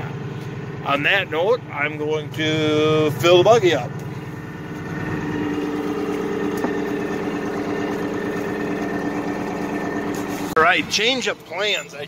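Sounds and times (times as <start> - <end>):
farm machine engine running: 2.4 - 12.0
steady whine: 4.2 - 11.0.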